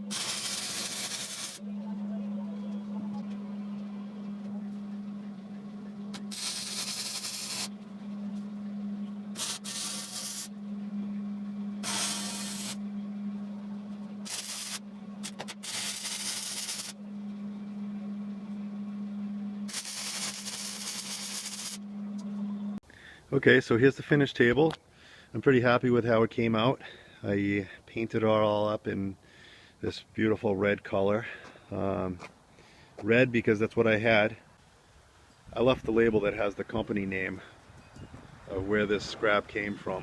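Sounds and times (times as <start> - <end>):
steady low hum: 0.0 - 40.0
spray paint hissing: 0.1 - 1.6, 6.2 - 7.7, 9.4 - 10.5, 11.8 - 12.8, 14.2 - 17.0, 19.7 - 21.8.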